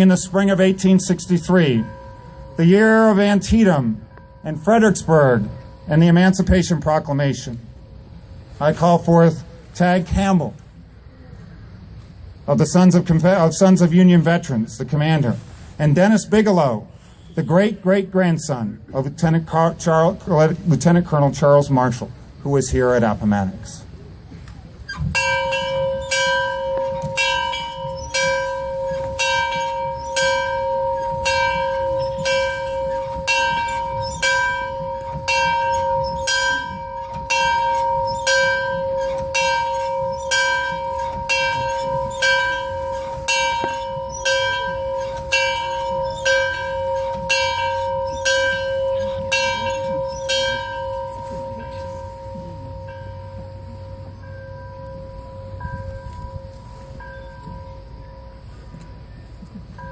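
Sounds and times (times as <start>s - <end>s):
large bell tolling: 0.0s - 8.1s, 25.2s - 59.9s.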